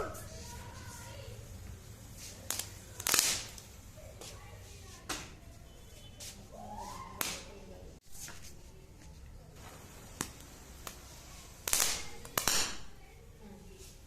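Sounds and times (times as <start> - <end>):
firecrackers snapping and crackling: 1.3 - 4.4, 7.0 - 7.6, 9.6 - 13.2.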